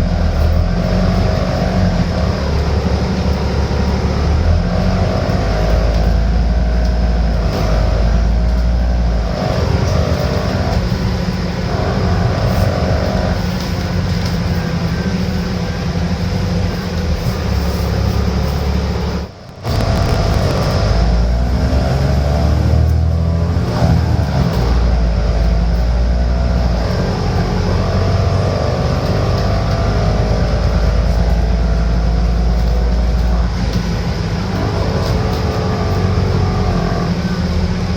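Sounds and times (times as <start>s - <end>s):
bus diesel engine running: 0.0s - 37.9s
whine sliding in pitch: 14.5s - 21.6s.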